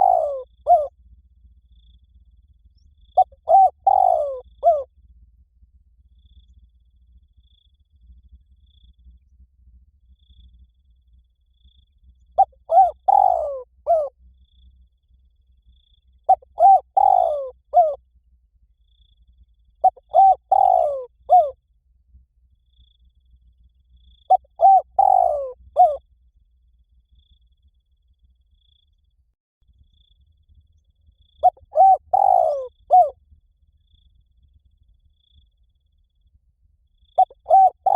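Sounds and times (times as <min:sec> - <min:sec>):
dove cooing: 0:00.0 - 0:00.9, 0:03.2 - 0:04.9, 0:12.4 - 0:14.1, 0:16.3 - 0:18.0, 0:19.8 - 0:21.6, 0:24.3 - 0:26.0, 0:31.4 - 0:33.2, 0:37.2 - 0:37.9.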